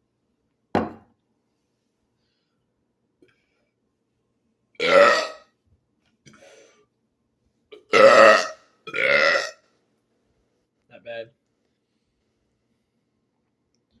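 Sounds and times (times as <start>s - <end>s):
man burping: 4.8s - 5.5s, 7.7s - 9.6s.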